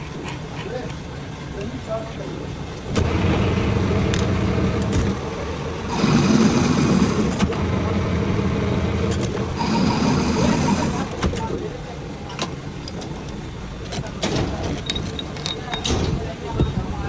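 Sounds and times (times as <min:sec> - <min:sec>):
lathe motor running: 0:02.9 - 0:11.2.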